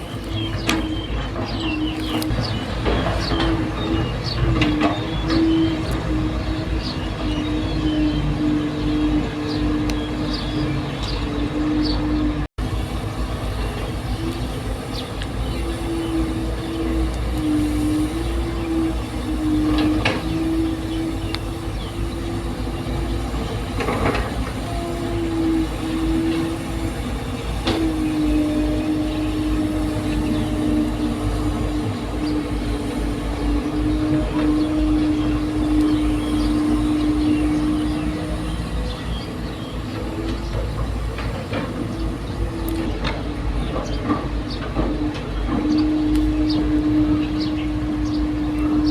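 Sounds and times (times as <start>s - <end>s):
steady mechanical hum: 0.0s - 48.9s.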